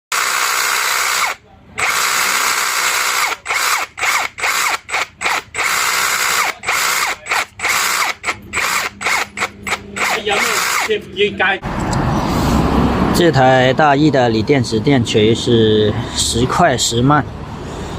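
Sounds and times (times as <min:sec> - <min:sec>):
rotary hammer cutting out: 0:00.1 - 0:11.0.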